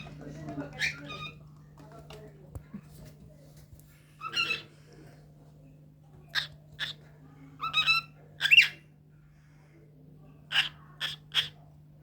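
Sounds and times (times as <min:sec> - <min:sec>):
cockatiel chirps and squawks: 0:04.2 - 0:04.7, 0:07.6 - 0:08.8, 0:10.5 - 0:11.6.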